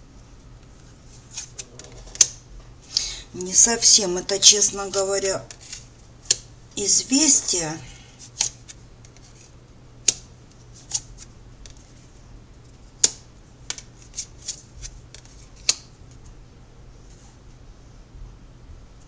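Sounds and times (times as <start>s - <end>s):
cards snapping on a table: 13.0s - 15.9s.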